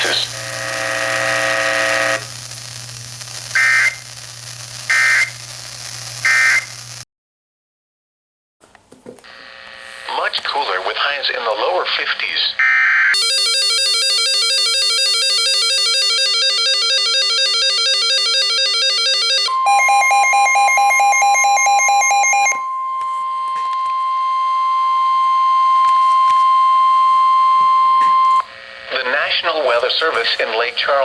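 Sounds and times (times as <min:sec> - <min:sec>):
steady warning alarm tone: 0:00.0 - 0:02.3, 0:03.6 - 0:04.1, 0:04.9 - 0:05.4, 0:06.2 - 0:06.7, 0:12.6 - 0:31.0
fast alternating electronic beeps: 0:15.5 - 0:23.5.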